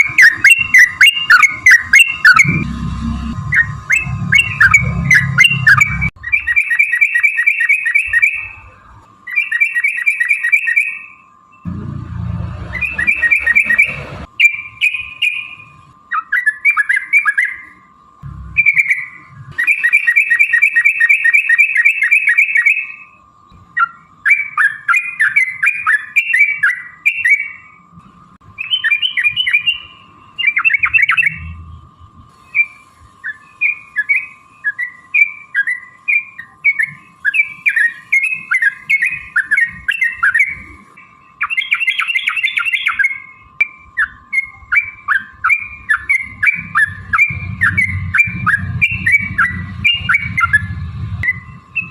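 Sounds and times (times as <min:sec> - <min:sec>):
rapid bird trill: 0:00.0 - 0:11.7, 0:12.5 - 0:51.9
faint steady tone: 0:00.0 - 0:51.9
bird chattering song: 0:03.5 - 0:08.7, 0:09.3 - 0:11.6, 0:12.7 - 0:17.8, 0:18.5 - 0:27.8, 0:28.6 - 0:31.6, 0:32.3 - 0:51.9.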